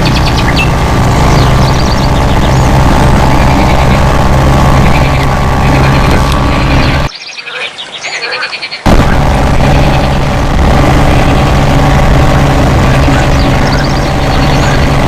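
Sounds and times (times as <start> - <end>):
engine drone: 0.0 - 7.6, 8.8 - 15.0
frogs croaking in trills: 7.1 - 8.9.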